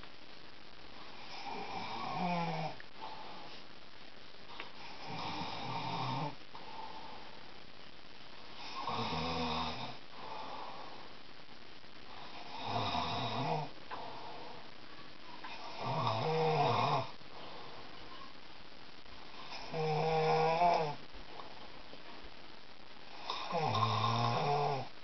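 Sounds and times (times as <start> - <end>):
man snoring: 1.3 - 2.8, 4.9 - 6.4, 8.6 - 10.0, 12.3 - 13.7, 15.7 - 17.1, 19.5 - 21.0, 23.1 - 24.9.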